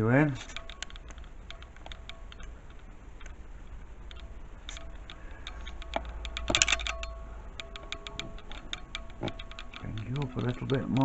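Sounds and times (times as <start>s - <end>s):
steady low hum: 0.0s - 11.0s
rattling clicks: 0.3s - 11.0s
camera handling clicks and taps: 4.0s - 11.0s.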